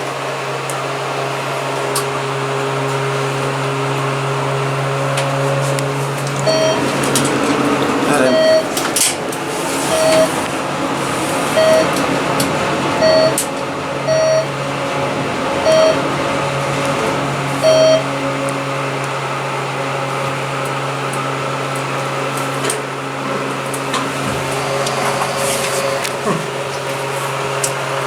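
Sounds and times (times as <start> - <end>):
elevator low hum: 0.0 - 28.0
short electronic beeps: 6.5 - 6.8, 8.2 - 8.7, 9.9 - 10.3, 11.6 - 11.9, 13.0 - 13.4, 14.1 - 14.5, 15.6 - 16.0, 17.6 - 18.1.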